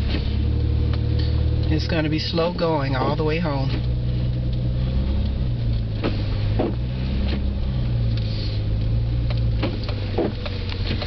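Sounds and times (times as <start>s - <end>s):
car engine and road hum: 0.0s - 11.0s.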